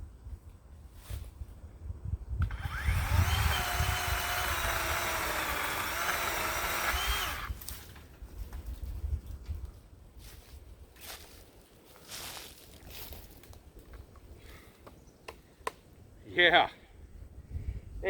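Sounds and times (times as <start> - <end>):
electric chainsaw whining: 2.4 - 7.9.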